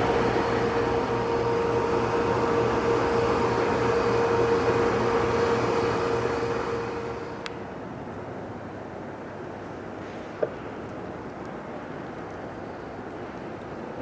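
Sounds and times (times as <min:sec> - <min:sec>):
train rumbling past: 0:00.0 - 0:07.9.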